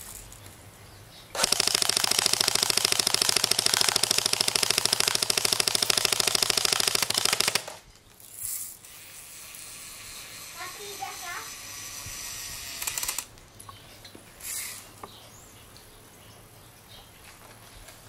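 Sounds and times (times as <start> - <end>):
airsoft gun full-auto burst: 1.4 - 7.8.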